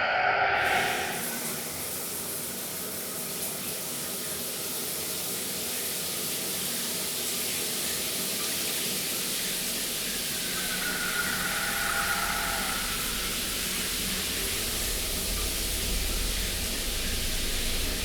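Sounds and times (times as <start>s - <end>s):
steady hiss: 9.0s - 18.0s.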